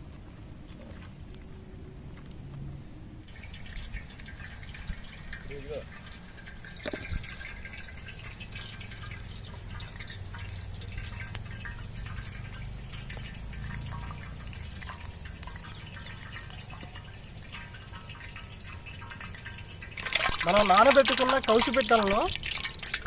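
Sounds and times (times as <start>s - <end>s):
oil crackling and popping: 3.2s - 23.0s.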